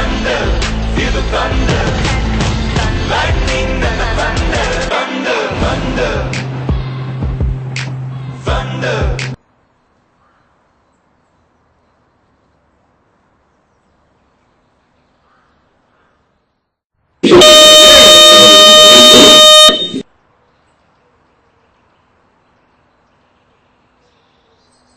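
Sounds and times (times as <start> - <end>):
electric school bell: 17.4 - 20.0.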